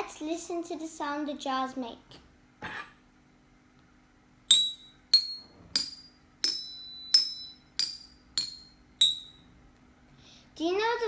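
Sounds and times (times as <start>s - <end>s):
glass bottles clinking: 4.5s - 9.4s.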